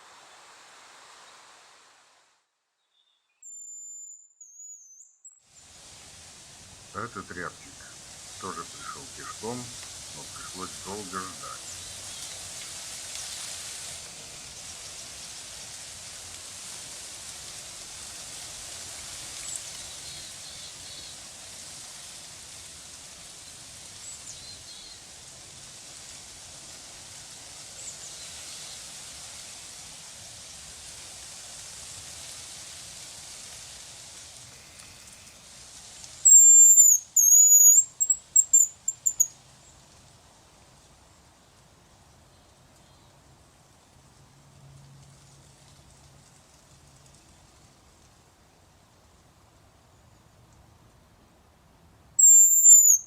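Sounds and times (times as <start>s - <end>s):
steady outdoor hiss: 0.0s - 3.4s, 4.5s - 53.0s
faint high bird chirps: 2.8s - 5.4s, 36.3s - 39.4s, 52.2s - 53.0s
high thin bird whistle: 2.9s - 5.4s, 36.2s - 39.4s, 52.2s - 53.0s.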